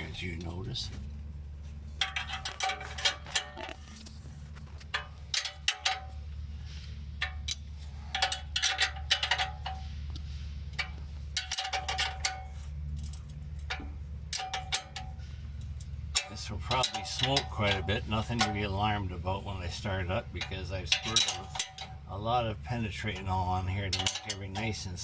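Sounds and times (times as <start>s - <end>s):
low hum: 0.0s - 25.0s
metal tools clinking on metal: 1.9s - 4.0s, 7.2s - 9.9s, 10.8s - 25.0s.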